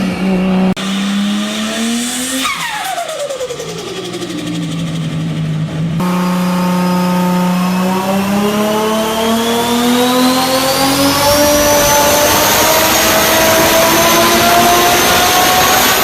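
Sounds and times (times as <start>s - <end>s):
car engine accelerating: 0.0s - 16.0s
high turbo whine: 0.0s - 16.0s.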